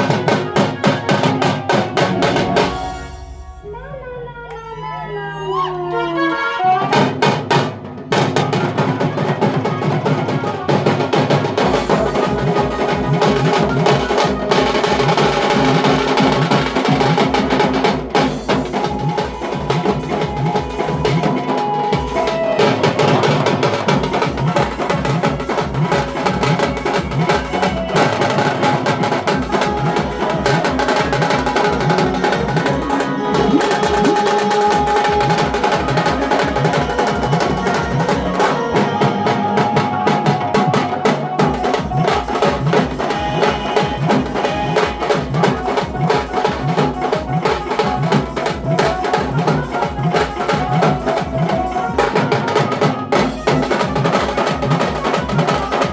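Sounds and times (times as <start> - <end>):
drums played fast: 0.0 - 4.2, 6.8 - 55.9
loud music: 11.5 - 55.9.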